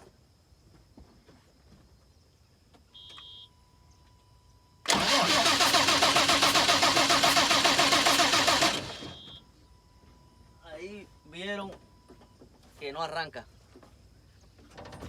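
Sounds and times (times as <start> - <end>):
diesel engine cranking: 4.9 - 9.4.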